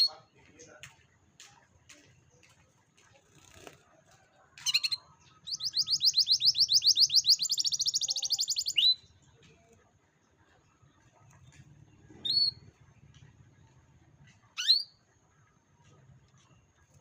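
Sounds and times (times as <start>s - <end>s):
canary singing: 4.6s - 9.2s, 11.4s - 13.3s, 14.2s - 15.2s.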